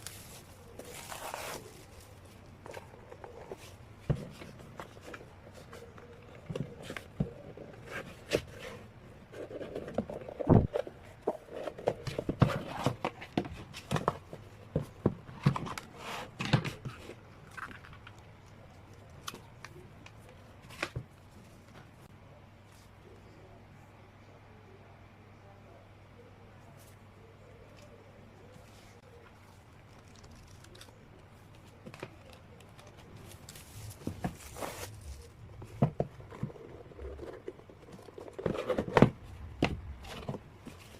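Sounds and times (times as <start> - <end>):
plastic wrap rustling: 0.0 - 3.8, 32.1 - 38.9.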